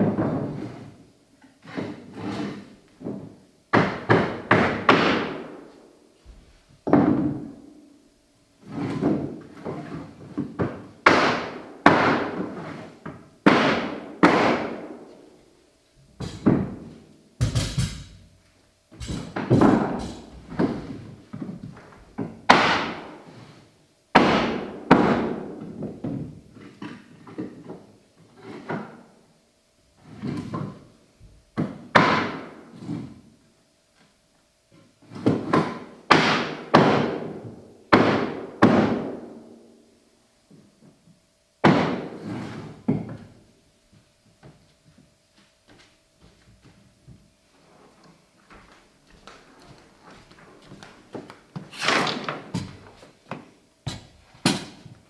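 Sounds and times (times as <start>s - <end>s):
hammer blows on floorboards: 1.6s - 7.6s, 8.6s - 15.2s, 16.0s - 27.8s.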